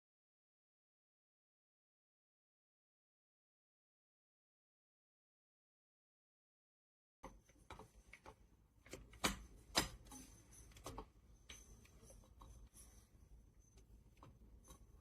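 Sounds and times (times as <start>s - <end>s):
hard objects clicking and knocking: 7.2s - 12.8s.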